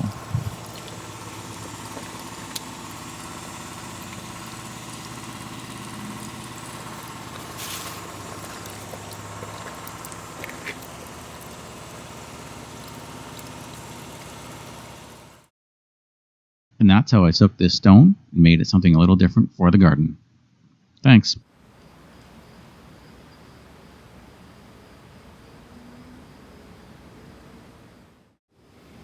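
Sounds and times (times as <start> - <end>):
engine idling: 0.0 - 15.5.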